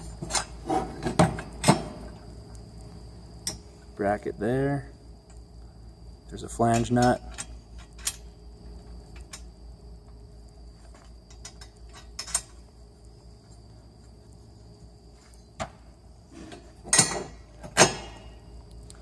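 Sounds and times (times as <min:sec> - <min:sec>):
metal hardware clinking: 0:11.3 - 0:12.6.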